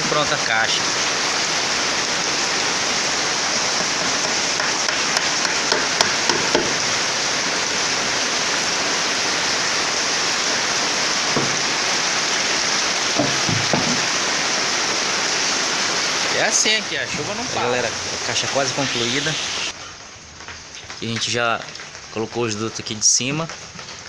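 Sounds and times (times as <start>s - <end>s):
rain falling: 0.0s - 24.0s
faint knocks: 11.4s - 11.8s, 13.2s - 14.1s.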